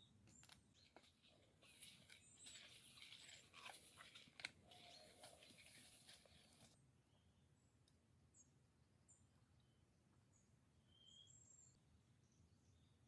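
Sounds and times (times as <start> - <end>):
faint rustling and crackling: 0.2 - 6.8
faint high bird chirps: 9.1 - 12.9.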